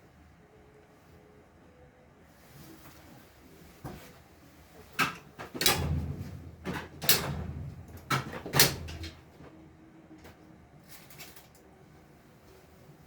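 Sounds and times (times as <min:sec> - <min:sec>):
low rumble of movement: 0:05.7 - 0:09.7.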